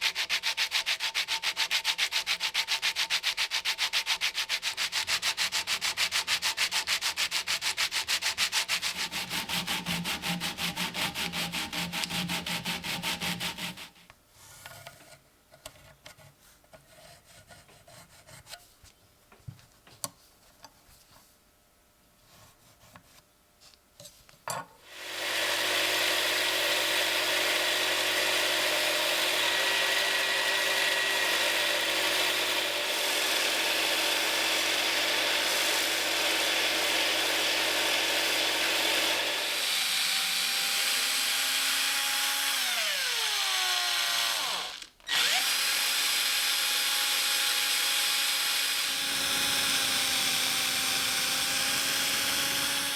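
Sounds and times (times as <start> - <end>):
hand sanding strokes: 0.0 - 14.6
motorized tool humming: 42.6 - 52.9.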